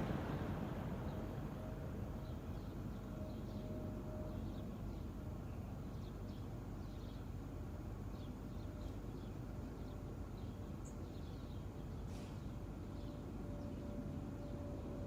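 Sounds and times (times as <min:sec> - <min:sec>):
steady low rumble: 0:00.0 - 0:05.6
faint hum: 0:00.0 - 0:15.0.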